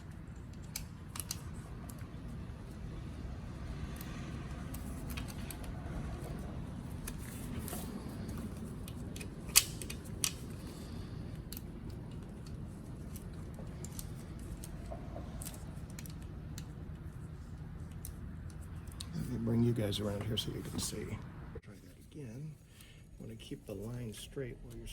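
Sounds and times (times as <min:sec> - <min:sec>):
metal clicks of hand tools: 0:00.0 - 0:02.1
steady low hum: 0:00.0 - 0:24.9.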